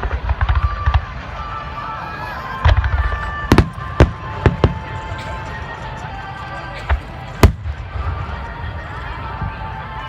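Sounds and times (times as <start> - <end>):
music: 0.0 - 10.0
fireworks booming: 2.6 - 5.6, 7.4 - 8.0
fireworks cracking bangs: 2.6 - 5.6, 6.9 - 8.1.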